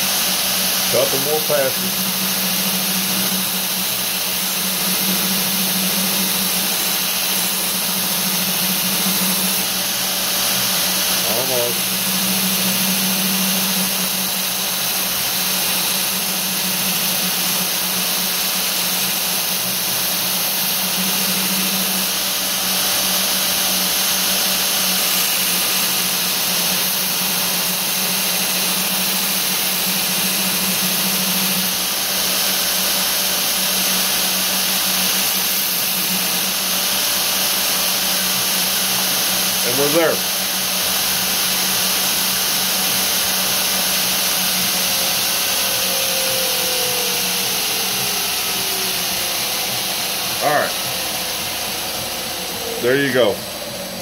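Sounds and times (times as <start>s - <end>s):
steel being ground: 0.0s - 54.0s
belt grinder motor hum: 38.5s - 54.0s.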